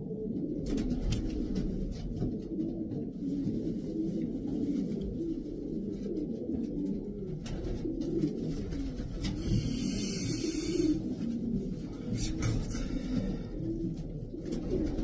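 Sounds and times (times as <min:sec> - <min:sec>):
pigeons cooing: 0:00.0 - 0:15.0
rustling hiss: 0:09.3 - 0:11.1.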